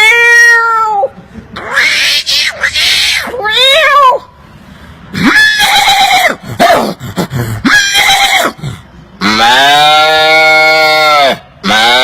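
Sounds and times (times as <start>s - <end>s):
man imitating animal calls: 5.2s - 12.0s.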